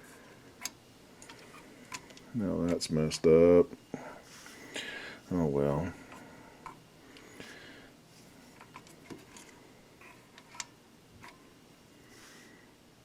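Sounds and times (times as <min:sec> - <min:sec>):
soft rustles: 0:04.2 - 0:10.6.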